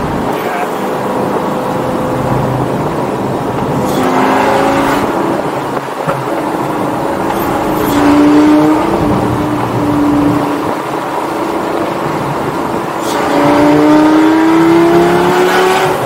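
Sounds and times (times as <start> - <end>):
sports car engine revving: 0.0 - 16.0.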